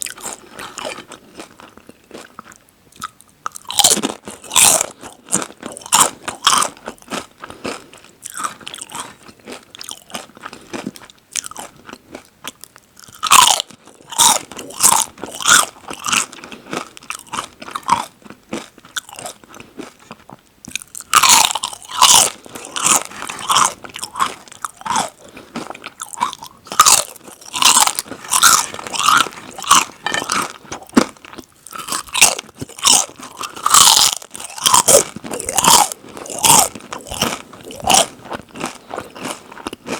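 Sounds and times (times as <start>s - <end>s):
crisps crunching: 20.7s - 39.9s.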